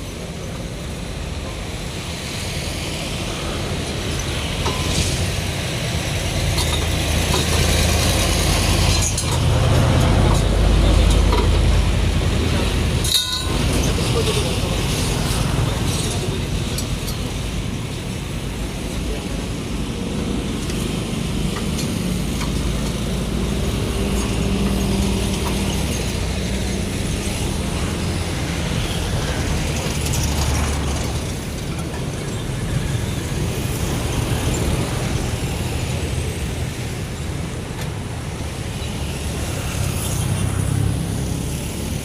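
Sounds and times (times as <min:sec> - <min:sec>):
metal rattling: 0:13.0 - 0:14.0.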